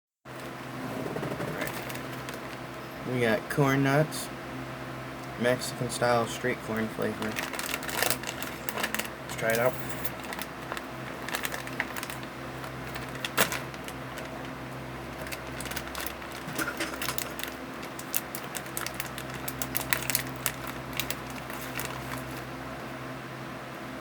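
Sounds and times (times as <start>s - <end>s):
steady low hum: 0.3s - 24.0s
snack bag crackling: 1.6s - 2.6s, 7.0s - 22.6s
crunchy nuts being eaten: 7.2s - 14.5s, 15.1s - 22.5s.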